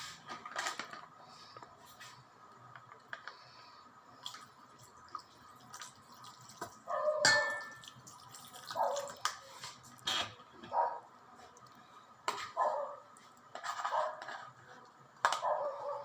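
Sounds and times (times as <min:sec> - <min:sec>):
drips: 0:04.2 - 0:10.0
dog barking: 0:06.9 - 0:07.4, 0:08.7 - 0:09.2, 0:10.7 - 0:11.1, 0:12.6 - 0:13.0, 0:13.9 - 0:14.2, 0:15.4 - 0:16.0.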